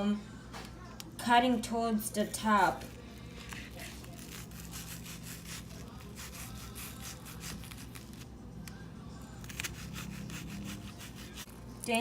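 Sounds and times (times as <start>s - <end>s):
knife slicing onion on board: 9.4s - 11.5s.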